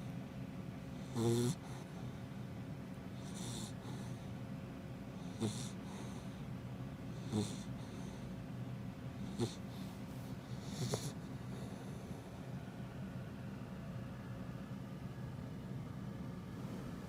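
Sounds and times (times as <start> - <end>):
puppy snoring: 0.9 - 2.3, 3.2 - 4.4, 5.1 - 6.5, 7.1 - 8.4, 9.1 - 12.5.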